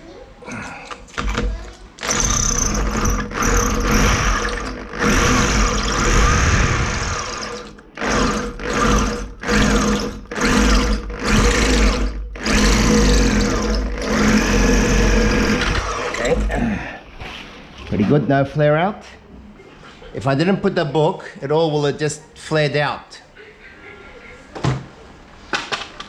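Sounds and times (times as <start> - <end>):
electric drill boring through wall: 1.2 - 16.6.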